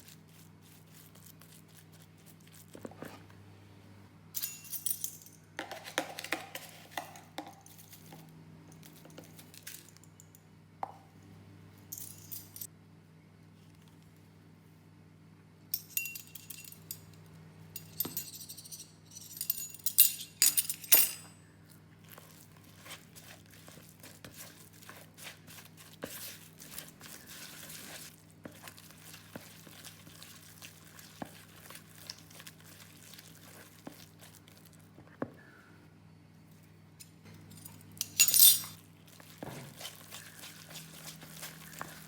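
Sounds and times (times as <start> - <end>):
kitchenware clinking: 12.0 - 12.7, 15.8 - 17.1, 17.8 - 21.4, 37.0 - 38.8.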